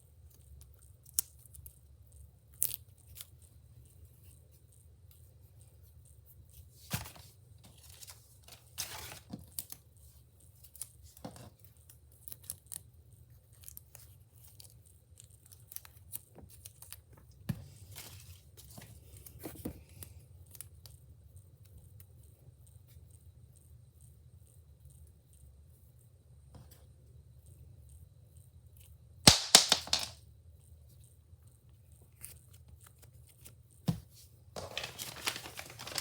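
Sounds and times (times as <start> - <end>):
packaging tearing and crinkling: 7.8 - 9.3, 34.6 - 36.0.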